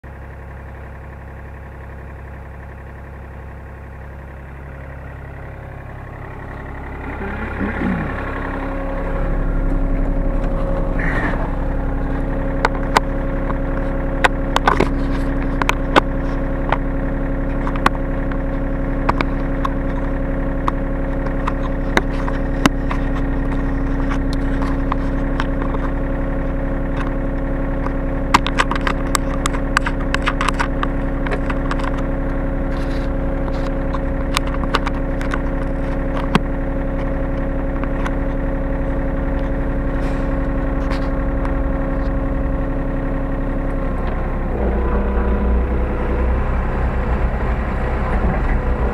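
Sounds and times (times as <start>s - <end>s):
diesel engine running: 0.0s - 48.9s
sharp clicks and knocks: 9.6s - 26.0s, 26.9s - 27.2s, 27.8s - 39.6s.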